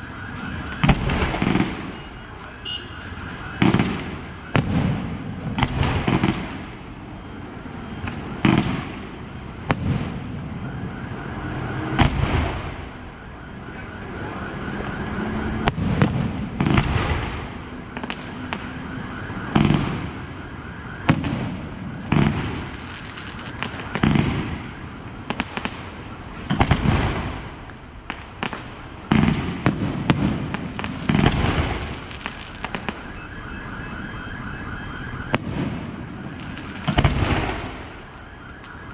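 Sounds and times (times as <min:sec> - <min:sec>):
fireworks crackling: 0:00.0 - 0:10.6, 0:14.2 - 0:33.8, 0:34.9 - 0:38.9
fireworks bursting with bangs: 0:00.6 - 0:07.0, 0:07.9 - 0:10.6, 0:11.8 - 0:13.0, 0:15.6 - 0:20.3, 0:21.0 - 0:33.2, 0:35.2 - 0:38.9.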